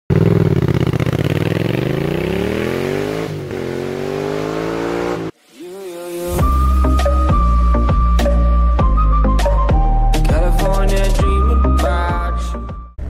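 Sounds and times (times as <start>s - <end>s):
motorcycle engine accelerating: 0.1s - 5.4s.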